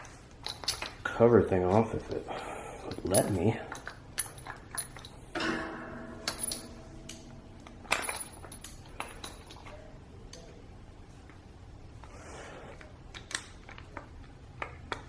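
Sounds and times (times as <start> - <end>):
light metal clicks and clinks: 2.8 - 5.3, 6.2 - 10.6
metal knocks: 5.4 - 9.2.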